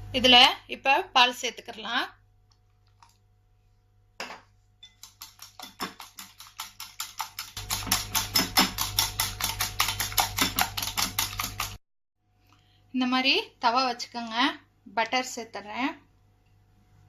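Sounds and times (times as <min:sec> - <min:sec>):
utensil whisking in a bowl: 0:04.8 - 0:11.8.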